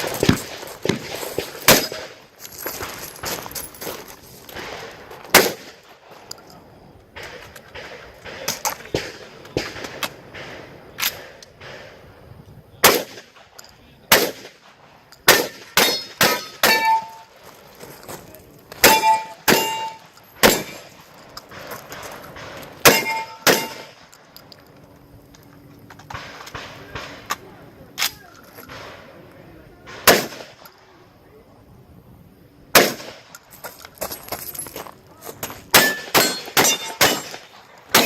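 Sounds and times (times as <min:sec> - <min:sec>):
shotgun shots: 0:00.0 - 0:02.2, 0:04.5 - 0:05.8, 0:07.2 - 0:12.0, 0:12.8 - 0:17.3, 0:18.8 - 0:20.9, 0:22.4 - 0:24.1, 0:29.9 - 0:30.7, 0:32.7 - 0:33.3, 0:35.7 - 0:38.0
steel targets clanging: 0:00.0 - 0:05.8, 0:15.1 - 0:24.7, 0:33.0 - 0:38.0.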